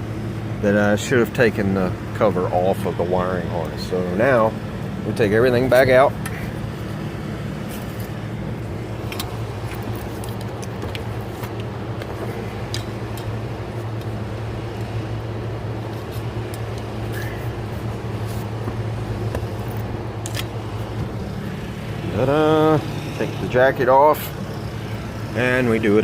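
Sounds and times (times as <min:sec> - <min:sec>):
steady low hum: 0:00.0 - 0:26.0
wiring harness clicks and rustles: 0:09.0 - 0:15.0, 0:15.8 - 0:21.5.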